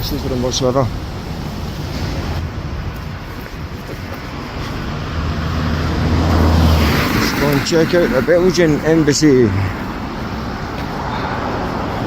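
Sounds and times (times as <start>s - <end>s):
street traffic noise: 0.0s - 12.0s
vehicle engine passing close: 4.8s - 9.8s.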